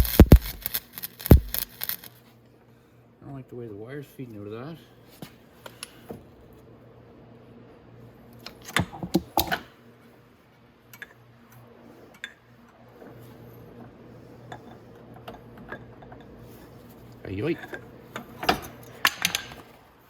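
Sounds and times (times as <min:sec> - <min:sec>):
small metal clicks: 0:00.0 - 0:02.1
steady low hum: 0:00.0 - 0:03.3.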